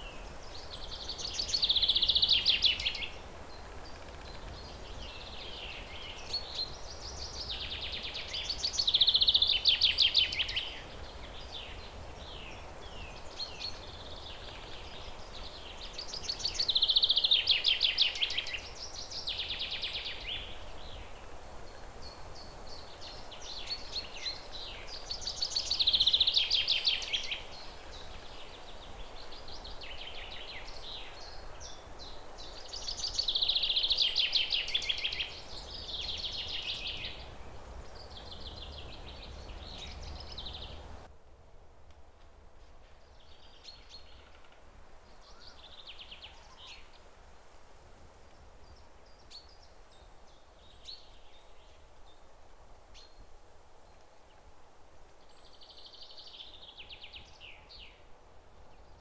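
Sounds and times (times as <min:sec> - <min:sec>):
faint low background noise: 0:00.0 - 0:59.0
soft bird chirps: 0:22.0 - 0:41.1.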